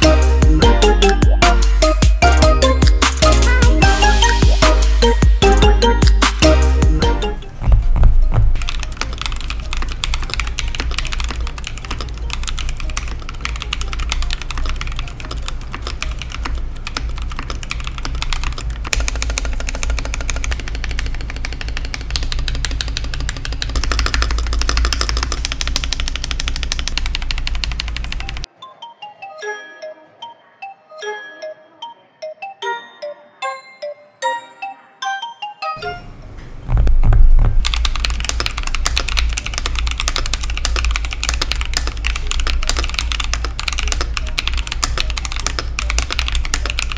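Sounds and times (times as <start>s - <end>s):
background music: 0.0s - 8.8s, 28.4s - 36.2s
mechanical keyboard typing: 8.5s - 28.5s, 36.8s - 46.9s.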